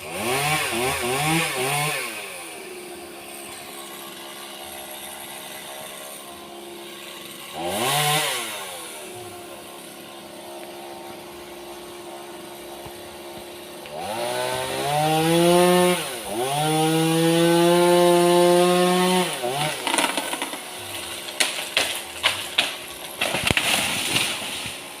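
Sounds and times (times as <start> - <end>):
chainsaw idling and revving: 0.0 - 25.0
sharp cracks and snaps: 19.8 - 24.8.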